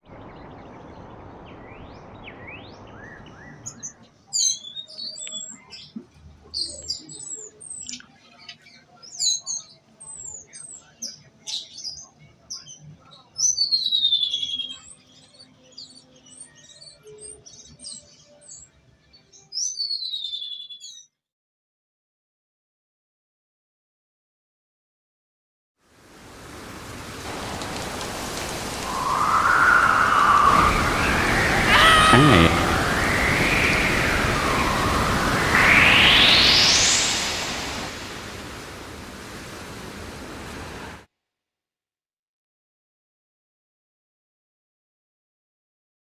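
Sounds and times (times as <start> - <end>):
steady hiss: 26.0 - 41.0
downward sliding whistles: 28.8 - 38.0
bird chirping: 28.8 - 38.2.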